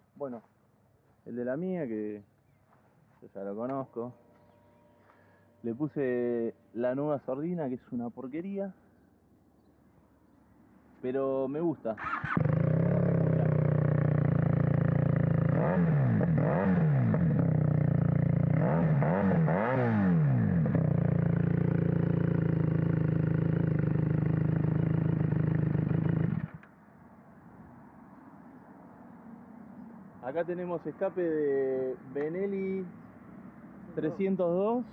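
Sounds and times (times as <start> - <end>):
motorcycle engine idling: 12.0 - 19.6, 20.2 - 26.6
motorcycle throttle blips: 12.0 - 26.7.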